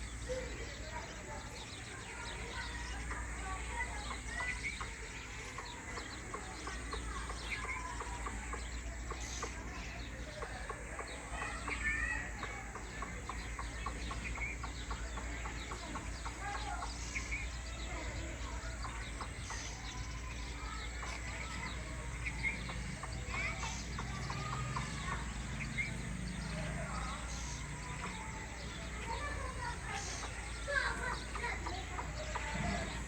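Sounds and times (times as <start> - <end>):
birds clucking and chirping: 0.0 - 33.0.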